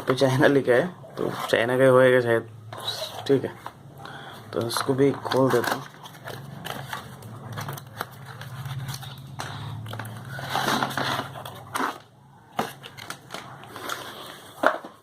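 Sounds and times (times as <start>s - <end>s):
packaging rustling and crinkling: 4.5s - 15.0s.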